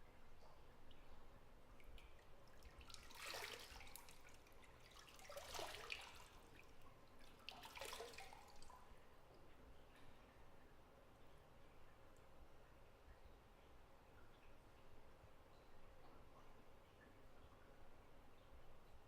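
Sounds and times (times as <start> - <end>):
water drips: 0.0 - 19.0
bathwater splashing and trickling: 1.7 - 9.0.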